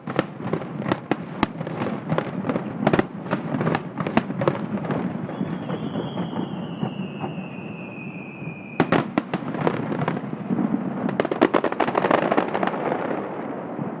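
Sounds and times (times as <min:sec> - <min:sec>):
crackling firework pops: 0:00.0 - 0:14.0
distant firework bursts rumbling: 0:00.0 - 0:14.0
sharp firework bangs: 0:00.0 - 0:14.0
whistling firework shell: 0:04.8 - 0:14.0.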